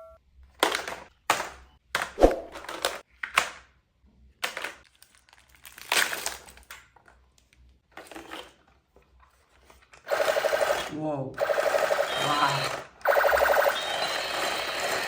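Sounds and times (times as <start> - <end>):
plastic packaging crinkling: 4.4 - 7.5.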